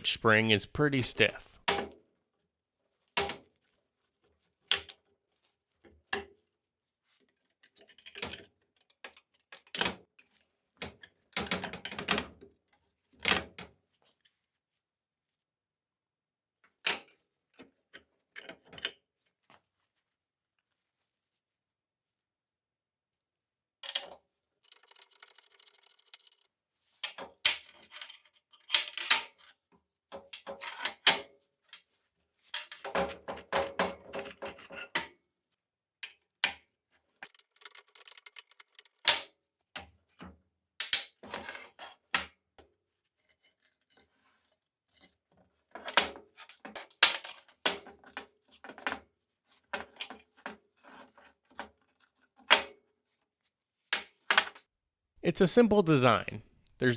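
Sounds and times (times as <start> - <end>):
steel parts clinking: 24.6 - 26.4, 37.2 - 39.1.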